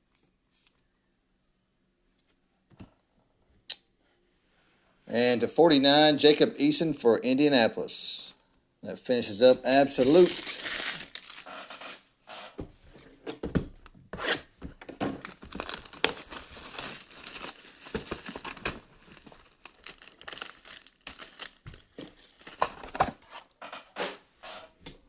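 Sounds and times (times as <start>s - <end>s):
plastic wrapping crinkling and tearing: 9.8s - 12.0s, 15.0s - 23.3s.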